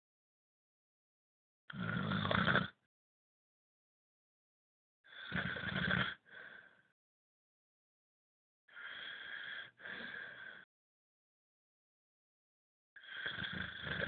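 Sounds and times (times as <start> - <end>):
person snoring: 1.7 - 2.9, 5.1 - 6.8, 8.7 - 10.6, 13.0 - 14.0
soft breathing: 6.2 - 6.9, 8.7 - 10.7.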